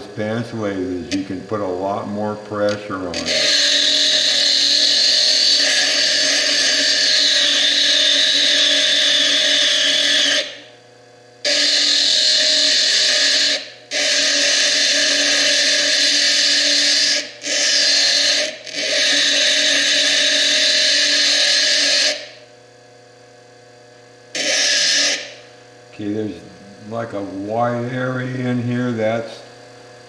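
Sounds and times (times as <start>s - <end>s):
lathe motor humming: 0.0s - 10.7s
lathe tool grinding stone: 0.0s - 10.7s, 11.4s - 22.4s, 24.4s - 25.4s.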